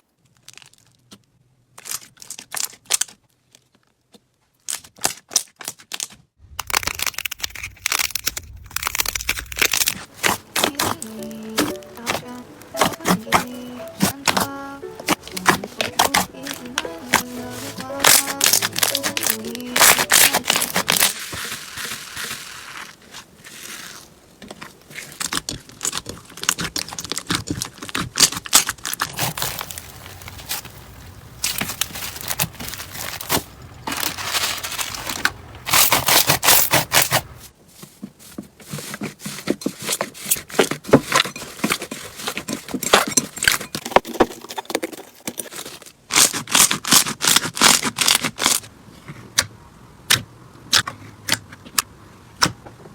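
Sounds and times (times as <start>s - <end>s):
slime crackling and popping: 4.6s - 12.2s, 18.0s - 24.1s, 24.9s - 37.0s
slime squishing: 6.5s - 37.4s.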